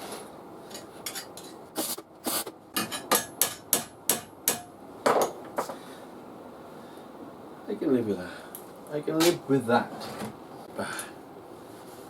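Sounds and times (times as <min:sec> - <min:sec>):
hammer striking steel: 0:02.8 - 0:04.8.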